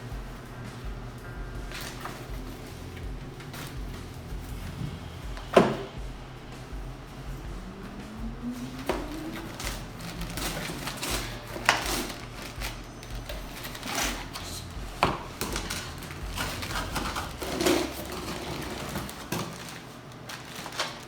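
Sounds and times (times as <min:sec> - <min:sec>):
parts knocking: 0:00.0 - 0:20.8
packaging rustling: 0:00.0 - 0:21.0.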